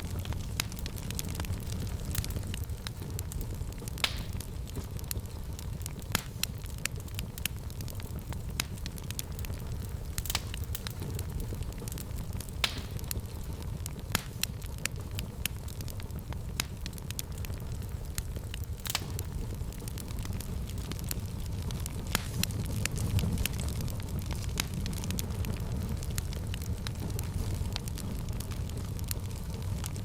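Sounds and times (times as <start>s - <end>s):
fire crackling and popping: 0.0s - 30.0s
low fire rumble: 0.0s - 30.0s.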